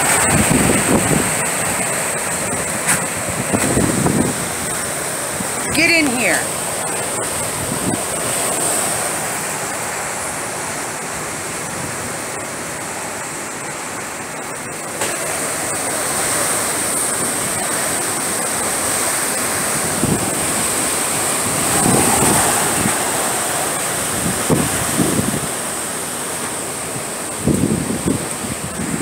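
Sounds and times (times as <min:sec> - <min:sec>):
wind buffeting microphone: 0:00.0 - 0:06.4, 0:07.0 - 0:09.0, 0:19.3 - 0:29.0
wind and rain rushing: 0:00.0 - 0:29.0.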